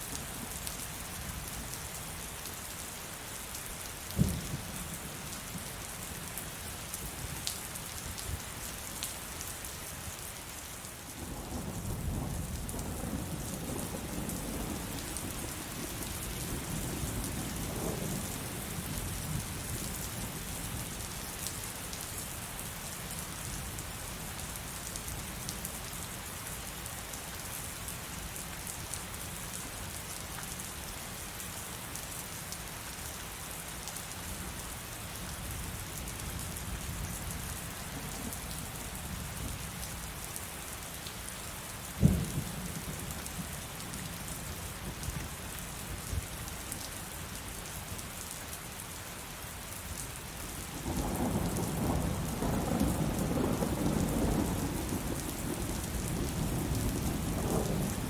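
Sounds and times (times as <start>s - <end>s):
heavy rain falling: 0.0s - 58.0s
sharp thunderclap: 4.2s - 4.5s, 42.0s - 42.5s
rolling rumble of thunder: 4.2s - 4.7s, 11.2s - 19.5s, 42.0s - 43.1s, 50.8s - 58.0s.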